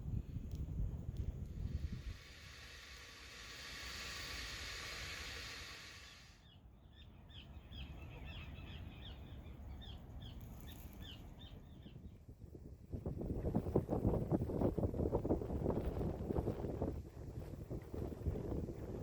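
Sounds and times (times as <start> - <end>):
wind rumble on microphone: 0.0 - 5.2, 11.0 - 19.0
steady hiss: 0.6 - 6.4
small bird chirping: 5.2 - 12.1.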